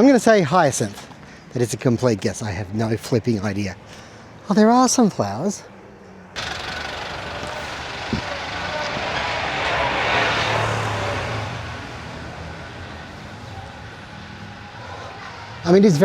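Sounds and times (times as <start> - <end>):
motor vehicle passing by: 6.3 - 16.0.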